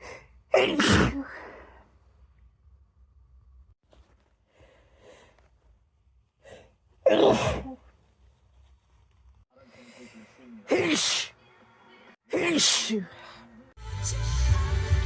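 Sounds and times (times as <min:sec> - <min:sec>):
woman sneezing: 0:00.6 - 0:01.5, 0:07.1 - 0:07.8, 0:10.7 - 0:11.3, 0:12.3 - 0:13.2.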